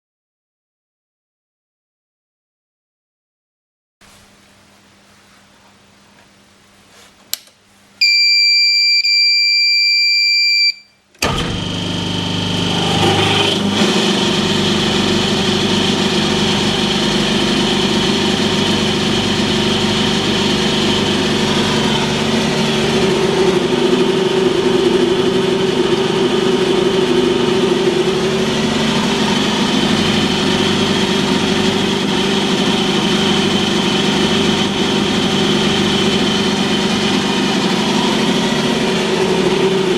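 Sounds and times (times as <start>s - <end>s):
steady electronic beep: 8.0s - 11.0s
hydraulic pump humming: 11.1s - 39.9s.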